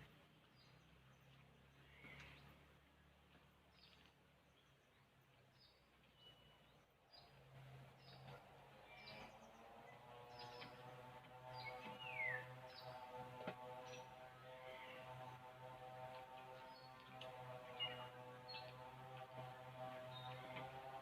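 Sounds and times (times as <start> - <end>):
low steady hum: 0.0 - 21.0
faint bird chirps: 6.1 - 6.8.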